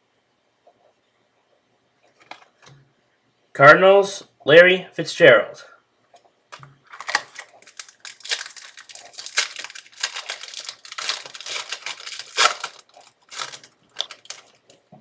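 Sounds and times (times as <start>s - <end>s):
plastic wrapper crinkling: 6.8s - 14.9s.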